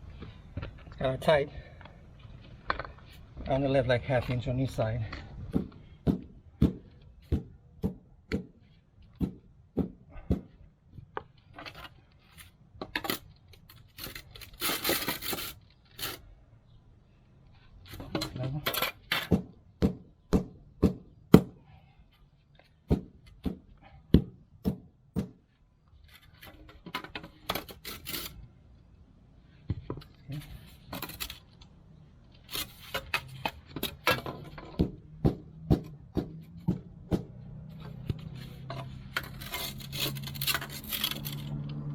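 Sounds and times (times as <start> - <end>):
stone scraping: 11.5 - 16.2, 26.1 - 28.4, 29.9 - 31.6, 32.4 - 34.7, 37.8 - 41.6.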